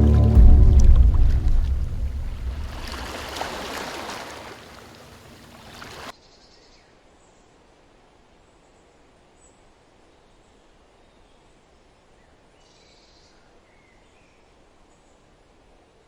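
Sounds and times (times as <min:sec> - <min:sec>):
running water rushing: 0:00.0 - 0:06.1.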